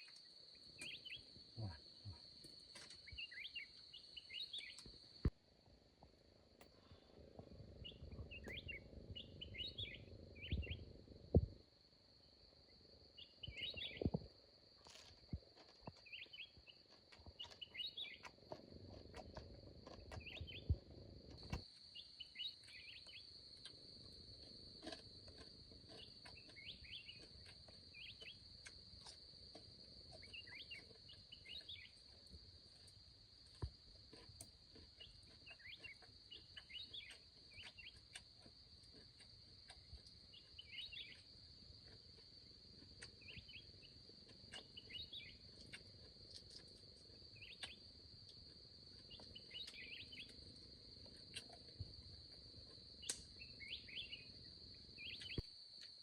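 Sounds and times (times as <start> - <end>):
bird chirps: 0.8 - 2.2, 2.8 - 4.9, 7.8 - 10.9, 13.2 - 14.2, 16.0 - 16.8, 17.4 - 18.3, 20.1 - 20.8, 21.9 - 23.3, 25.9 - 28.4, 30.2 - 32.0, 35.0 - 38.0, 40.3 - 41.2, 43.2 - 43.9, 44.6 - 45.4, 47.4 - 47.8, 49.1 - 50.4, 53.0 - 54.4, 55.0 - 55.5.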